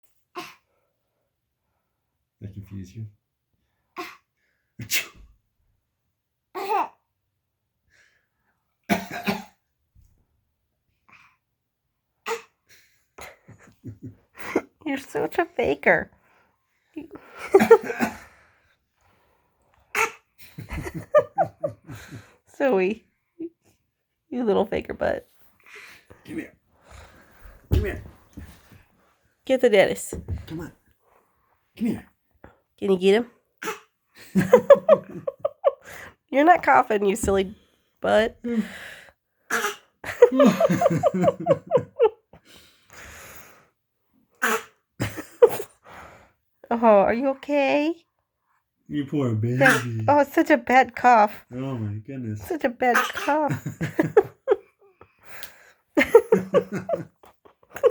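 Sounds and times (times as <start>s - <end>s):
dog coughing and hacking: 8.9s - 9.6s, 52.9s - 53.6s
dog honking cough: 49.6s - 50.0s, 53.0s - 53.4s.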